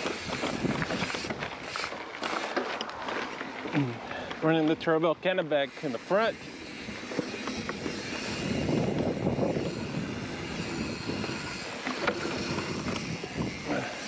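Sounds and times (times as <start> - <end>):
wind on microphone: 0.0 - 1.8, 7.3 - 14.0
bike tyre rumble on dirt: 0.0 - 5.4, 6.0 - 14.0.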